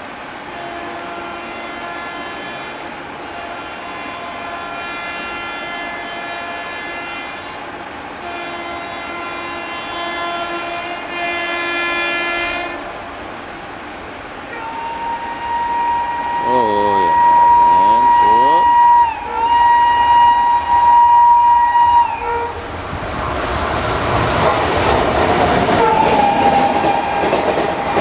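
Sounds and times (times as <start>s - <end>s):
train running noise: 0.0s - 28.0s
locomotive multi-tone horn: 0.5s - 13.1s, 14.5s - 22.7s, 25.7s - 28.0s
steady high tone: 14.9s - 20.5s.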